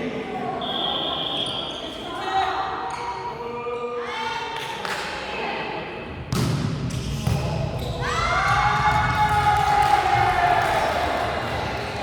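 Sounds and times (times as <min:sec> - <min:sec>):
sneakers squeaking: 0:06.3 - 0:09.3
basketballs bouncing on gym floor: 0:06.3 - 0:12.0.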